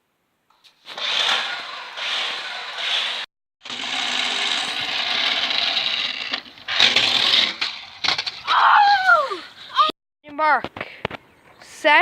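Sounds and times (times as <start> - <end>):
wheels grinding over ground: 0.6 - 9.0
toy car electric motor whirring: 0.9 - 8.0.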